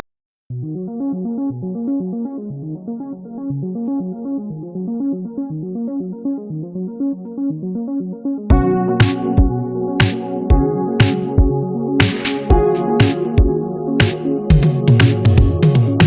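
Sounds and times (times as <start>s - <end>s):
synthesizer arpeggio: 0.5s - 16.0s
drums: 8.5s - 16.0s.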